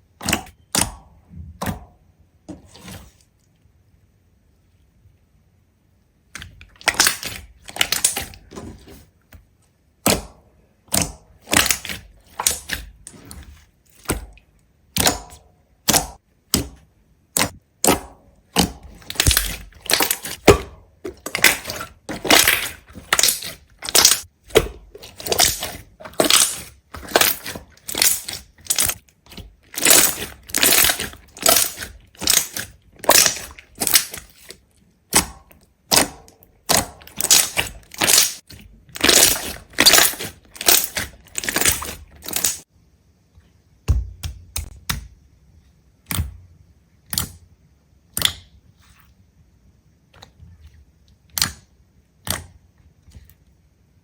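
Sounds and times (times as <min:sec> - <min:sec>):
brittle crunching: 0:18.9 - 0:34.6, 0:36.7 - 0:42.6.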